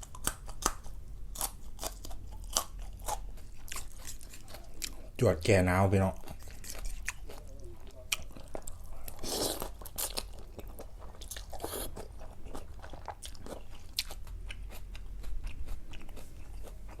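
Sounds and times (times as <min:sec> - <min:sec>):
person chewing and crunching food: 0:00.0 - 0:05.2, 0:06.0 - 0:17.0.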